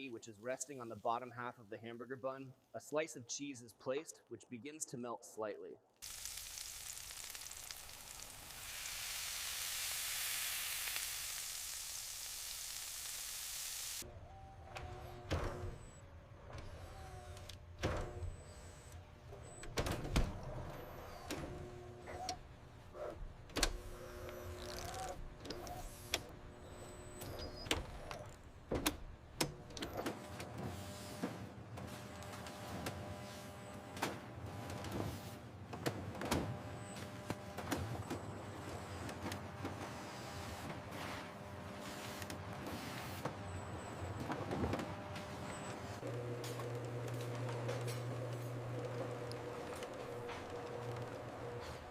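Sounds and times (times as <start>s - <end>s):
patty sizzling: 6.0s - 14.0s.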